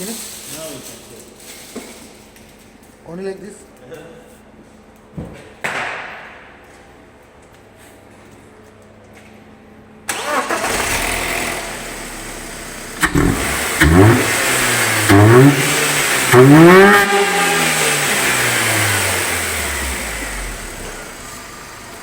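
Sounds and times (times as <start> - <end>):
car engine starting and revving: 10.1 - 22.0.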